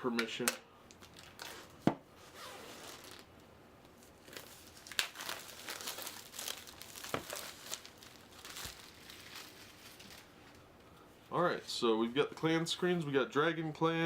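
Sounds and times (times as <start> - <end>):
plastic wrap crinkling and tearing: 1.0 - 1.8, 2.4 - 3.3, 4.0 - 10.6
crisp snaps: 3.8 - 10.3.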